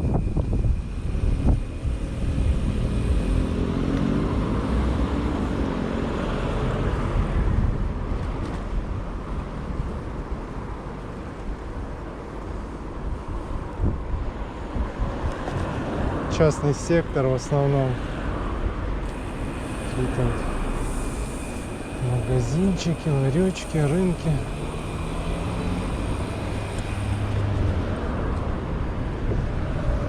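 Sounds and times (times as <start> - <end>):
wind buffeting microphone: 0.0 - 5.8, 6.7 - 11.0, 11.6 - 16.3
motor vehicle passing: 18.0 - 28.8.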